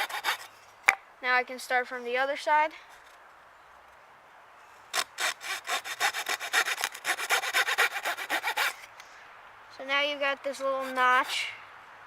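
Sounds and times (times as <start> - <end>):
hand saw cutting wood: 0.0 - 0.5, 4.9 - 8.9, 10.5 - 11.5.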